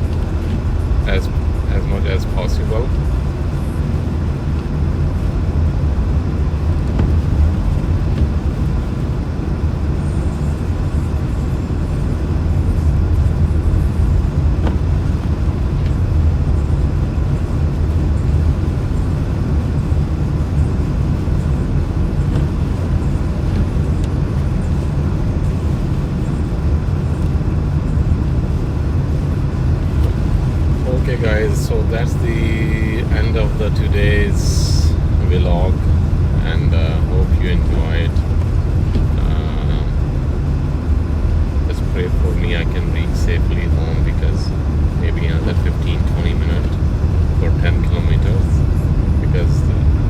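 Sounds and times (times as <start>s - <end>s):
car driving on snowy road: 0.0s - 50.0s.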